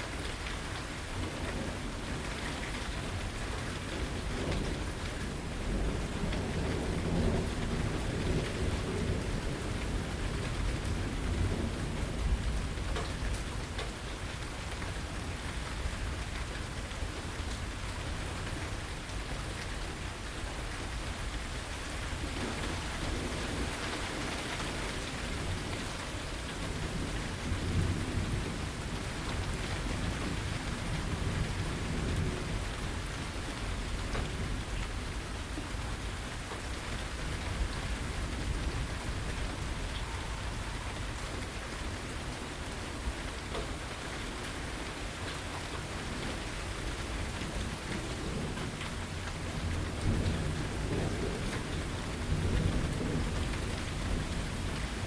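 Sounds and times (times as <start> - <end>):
heavy rain: 0.0 - 55.0
rolling thunder: 37.2 - 42.1, 47.3 - 55.0.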